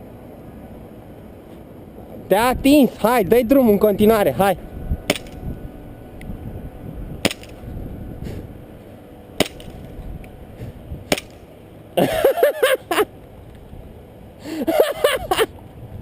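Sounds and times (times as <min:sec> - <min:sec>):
airsoft gun shots: 0:05.1 - 0:05.4, 0:07.2 - 0:07.6, 0:09.4 - 0:09.8, 0:11.1 - 0:11.4.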